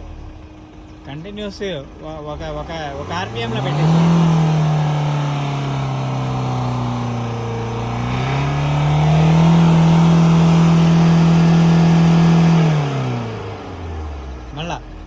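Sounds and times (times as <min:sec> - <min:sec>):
diesel engine revving: 0:00.0 - 0:15.0.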